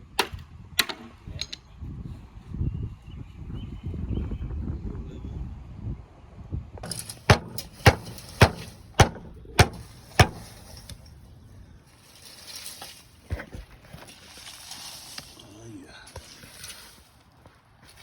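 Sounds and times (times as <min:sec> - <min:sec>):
sharp hammer blows: 0:06.9 - 0:10.7.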